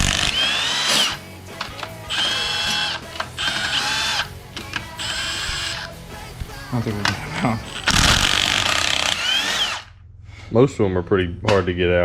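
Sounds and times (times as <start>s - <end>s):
power tool motor whining: 0.0s - 6.0s, 7.6s - 10.0s.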